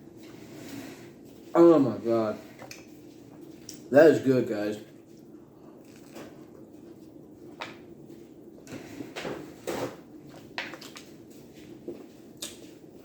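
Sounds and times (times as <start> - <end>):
person chewing: 2.6 - 3.9, 4.9 - 8.8, 10.2 - 12.9.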